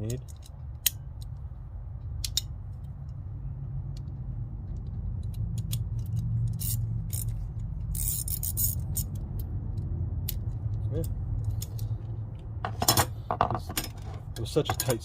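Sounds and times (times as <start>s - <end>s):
metal tool clicks and clinks: 0.0s - 1.4s, 12.8s - 15.0s
steady low hum: 0.0s - 15.0s
ratchet clicking: 4.7s - 12.0s.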